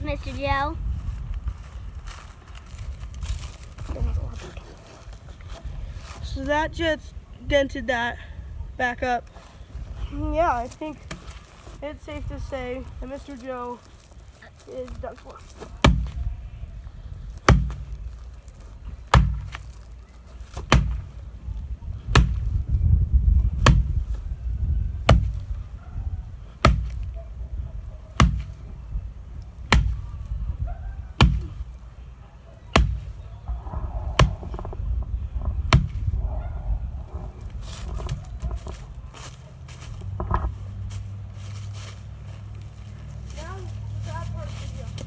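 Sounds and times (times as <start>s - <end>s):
sledgehammer striking dummy: 17.4s - 17.9s, 19.1s - 19.6s, 20.6s - 21.1s, 22.1s - 22.4s, 25.1s - 25.3s, 26.6s - 27.0s, 28.2s - 28.5s, 29.7s - 30.0s, 31.2s - 31.5s, 32.7s - 33.1s, 34.2s - 34.7s, 35.7s - 36.0s.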